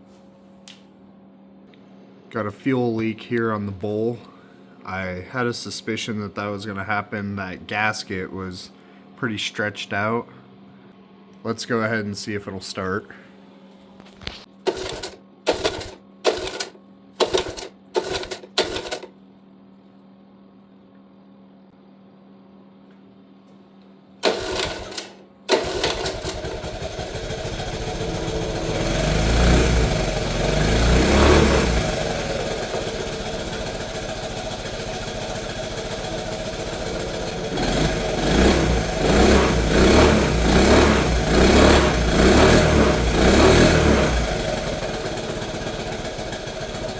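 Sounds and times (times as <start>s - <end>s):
recoil starter pulls: 14.7s - 19.1s, 24.2s - 46.9s
small engine revving and idling: 14.7s - 19.1s, 24.2s - 46.9s.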